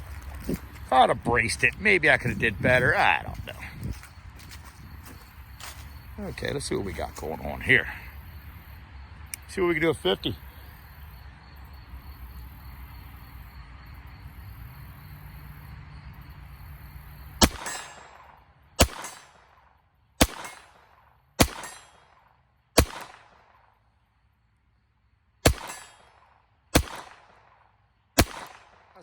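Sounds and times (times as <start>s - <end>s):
pistol shots: 17.4s - 19.6s, 20.2s - 22.2s, 22.8s - 23.6s, 25.4s - 29.0s.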